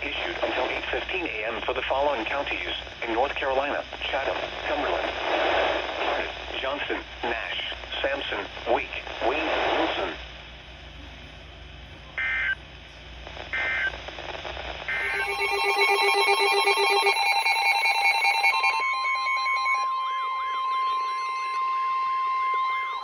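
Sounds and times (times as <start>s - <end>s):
data noise bursts: 14.8s - 23.0s
steady alert tones: 15.0s - 21.1s
siren-like wail: 15.0s - 23.0s.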